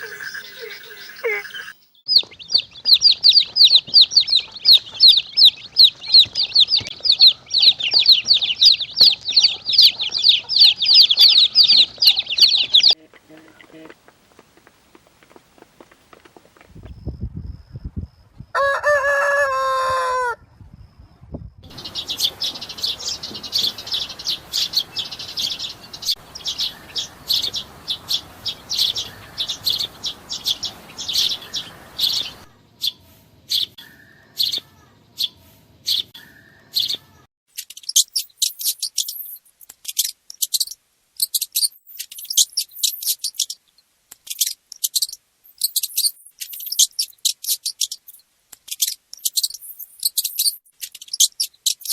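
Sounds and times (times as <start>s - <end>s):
small birds chirping: 0.0s - 14.0s, 21.0s - 51.9s
background noise: 0.0s - 51.9s
rooster crowing: 18.5s - 20.4s.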